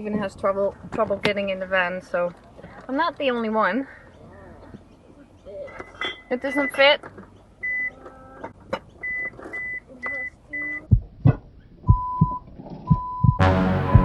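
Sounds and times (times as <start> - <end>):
door-open warning beeping: 7.6 - 8.0
dull thumps: 10.9 - 14.0.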